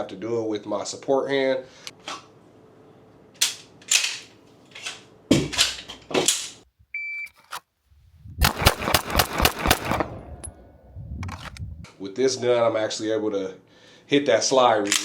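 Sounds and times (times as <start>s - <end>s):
shot timer beep: 6.9s - 7.3s
pistol shots echoing: 8.4s - 10.3s.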